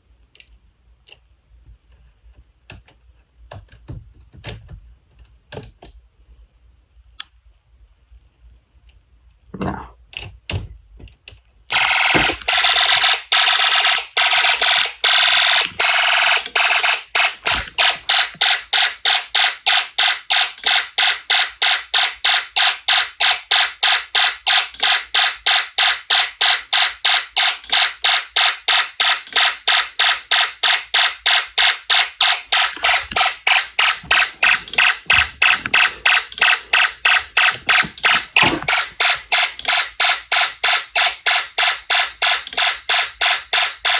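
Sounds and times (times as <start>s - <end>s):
shrill electronic alarm tone: 11.7s - 18.2s, 29.1s - 43.9s.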